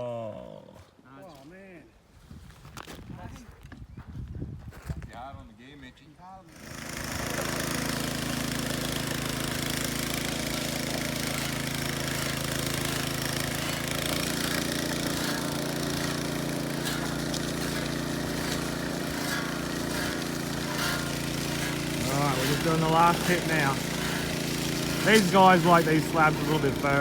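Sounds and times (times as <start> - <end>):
small petrol engine drone: 6.5 - 27.0.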